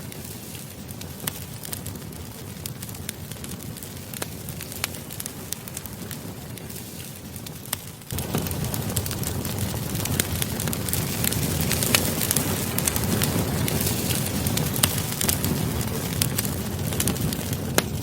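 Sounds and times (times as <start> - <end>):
flames rumbling: 0.0 - 18.0
wood crackling and popping: 0.0 - 18.0.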